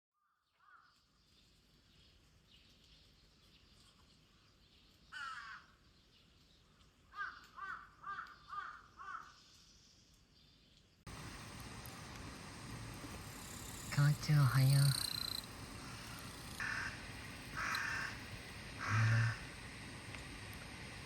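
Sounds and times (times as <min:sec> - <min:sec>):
crow cawing: 0:05.1 - 0:05.7, 0:07.1 - 0:09.4, 0:15.2 - 0:19.5.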